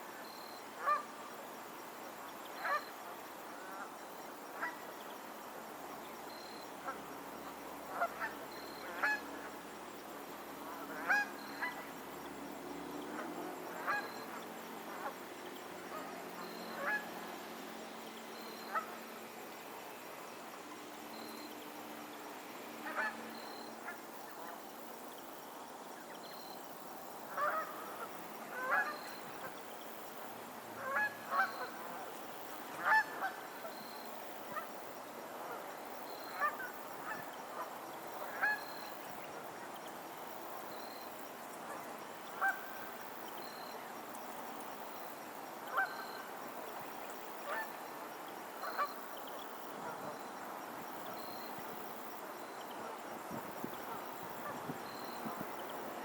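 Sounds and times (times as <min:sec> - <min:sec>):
steady background hiss: 0:00.0 - 0:56.0
geese honking: 0:15.9 - 0:17.1, 0:22.8 - 0:24.0.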